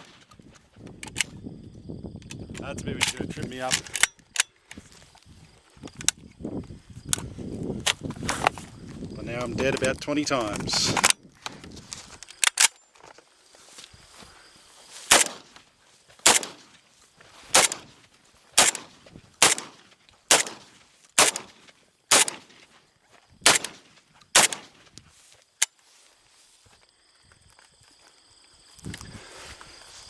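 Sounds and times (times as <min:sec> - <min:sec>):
gunshots: 0:15.1 - 0:15.5, 0:16.2 - 0:16.7, 0:17.5 - 0:17.9, 0:18.6 - 0:22.5, 0:23.4 - 0:24.8.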